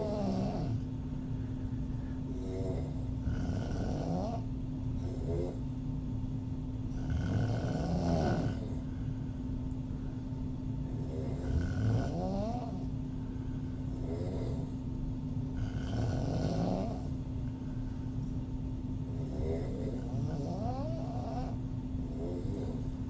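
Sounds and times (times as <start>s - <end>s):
woman snoring: 0.0s - 0.8s, 2.3s - 5.6s, 6.9s - 8.8s, 11.0s - 12.9s, 14.0s - 14.7s, 15.6s - 17.2s, 19.1s - 22.8s.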